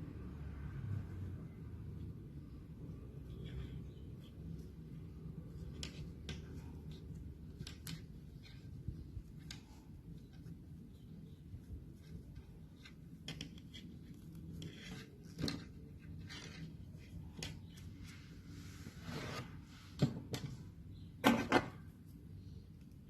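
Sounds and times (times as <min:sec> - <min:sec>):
crochet handling clicks: 0:05.6 - 0:08.7.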